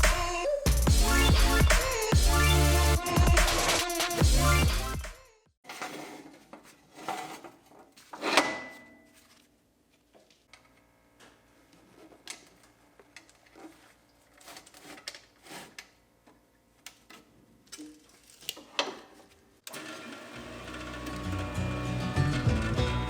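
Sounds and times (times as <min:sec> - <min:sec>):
background music: 0:00.0 - 0:05.1, 0:20.6 - 0:23.0.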